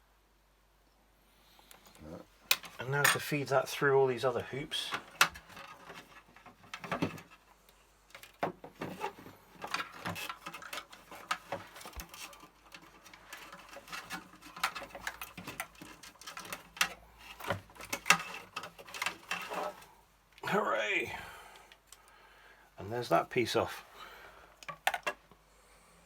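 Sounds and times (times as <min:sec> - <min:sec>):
hands clicking and rustling cable: 0:01.6 - 0:03.4, 0:04.9 - 0:20.5, 0:21.6 - 0:22.2, 0:24.5 - 0:25.4.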